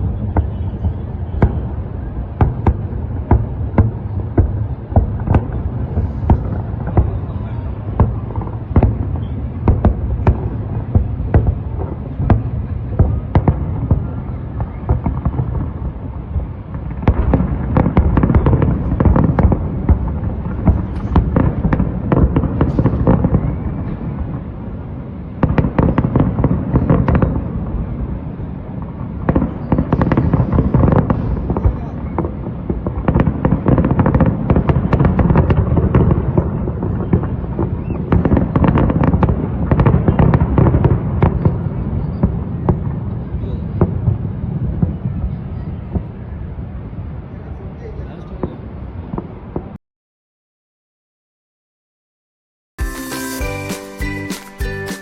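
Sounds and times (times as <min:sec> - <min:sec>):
fireworks bangs and crackles: 0:00.0 - 0:49.8, 0:52.8 - 0:55.0.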